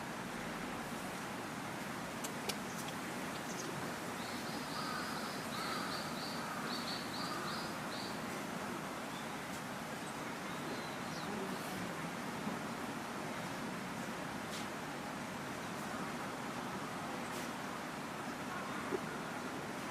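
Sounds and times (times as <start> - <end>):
outdoor background hiss: 0.0 - 19.9
faint clicks: 2.2 - 3.7.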